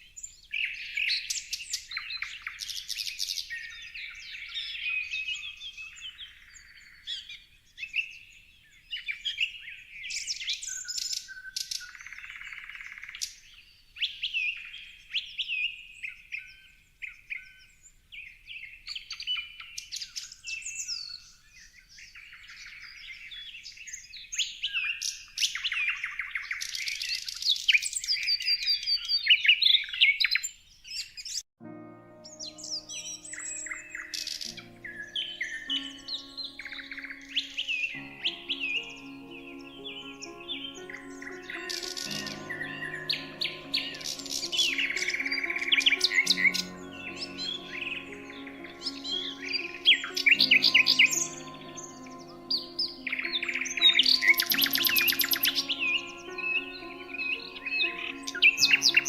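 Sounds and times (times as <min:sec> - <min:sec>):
birds chirping and trilling: 0:32.1 - 0:59.0.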